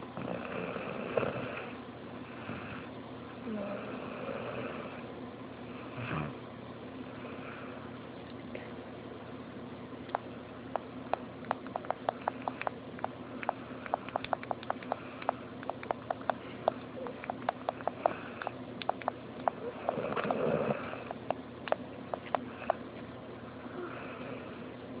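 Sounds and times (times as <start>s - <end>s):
steady low hum: 0.0s - 25.0s
sharp irregular clicks: 10.1s - 22.8s
person snoring: 19.6s - 21.2s.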